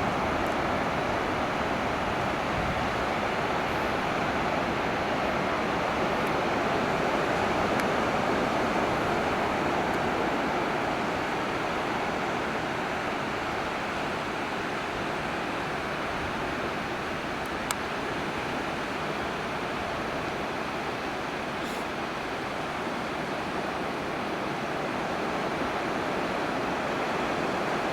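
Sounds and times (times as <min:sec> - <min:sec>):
ocean surf breaking: 0:00.0 - 0:14.2.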